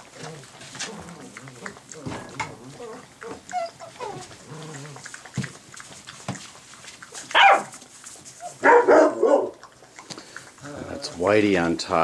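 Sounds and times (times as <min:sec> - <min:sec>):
puppy yelping: 0:02.6 - 0:05.0, 0:07.2 - 0:07.8, 0:08.4 - 0:09.6
puppies yapping barks: 0:07.2 - 0:07.8, 0:08.4 - 0:09.7.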